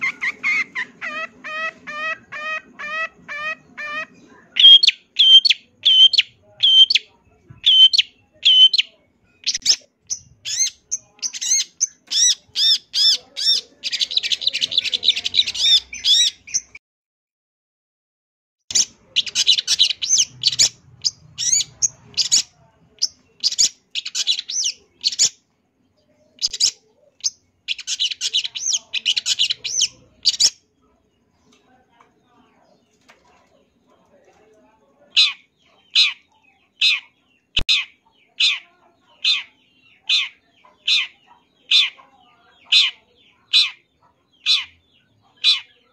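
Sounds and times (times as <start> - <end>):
shrike singing: 0.0 - 16.8, 18.7 - 25.4.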